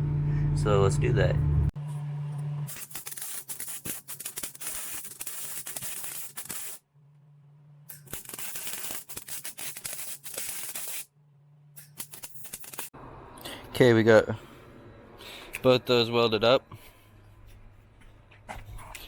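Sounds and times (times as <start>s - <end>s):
low hum: 0.0s - 3.1s, 13.0s - 19.0s
electric welder crackling: 2.7s - 6.8s, 7.9s - 11.1s, 11.8s - 12.9s.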